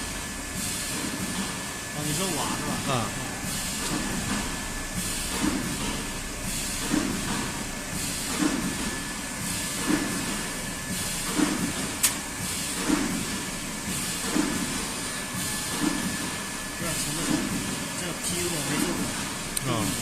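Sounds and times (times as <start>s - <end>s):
machine hiss and low pulse: 0.0s - 20.0s
steady high whine: 1.7s - 7.9s
sharp click: 12.0s - 12.2s.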